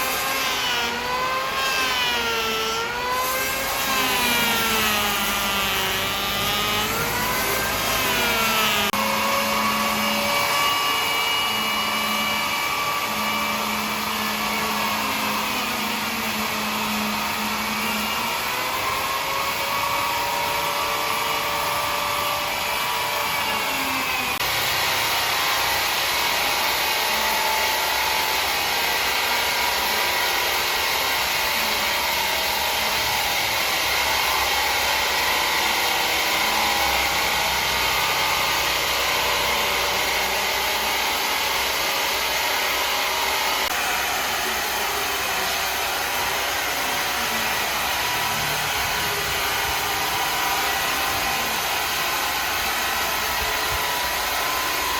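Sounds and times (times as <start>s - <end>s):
power saw cutting wood: 0.0s - 54.9s.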